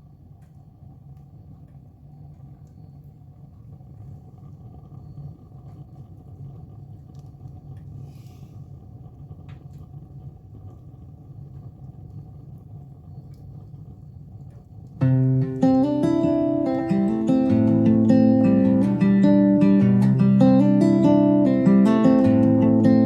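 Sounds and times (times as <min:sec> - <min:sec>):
fire crackling: 0:00.0 - 0:23.0
flames rumbling in fireplace: 0:00.0 - 0:23.0
fire hissing: 0:07.6 - 0:14.2.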